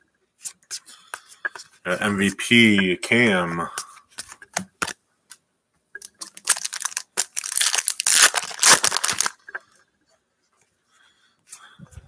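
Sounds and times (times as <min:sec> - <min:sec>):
wrapper tearing and crinkling: 0:06.0 - 0:09.4.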